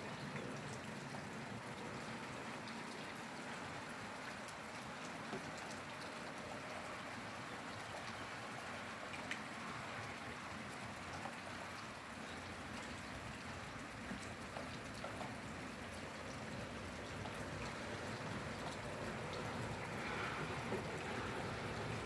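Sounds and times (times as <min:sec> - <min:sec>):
raindrops ticking on surface: 0:00.0 - 0:22.0
steady rainfall hiss: 0:00.1 - 0:22.0.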